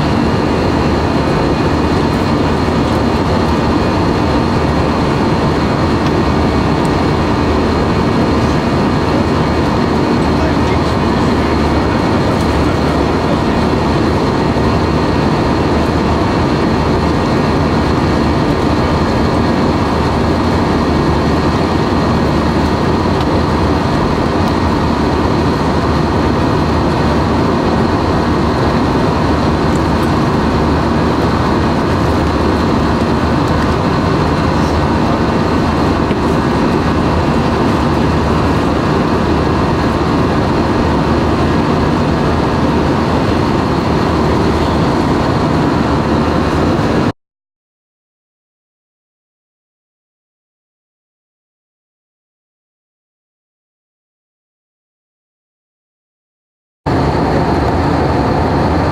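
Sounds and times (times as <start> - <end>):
airliner cabin engine noise: 0.0 - 47.2, 56.9 - 58.9.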